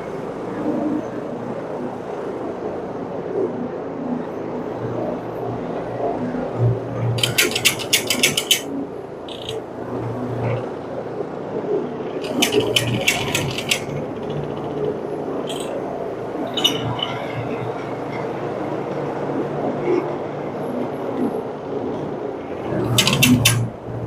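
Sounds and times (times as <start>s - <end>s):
rapid clicking: 7.2s - 8.7s, 9.3s - 9.6s, 12.2s - 15.8s, 22.7s - 23.8s.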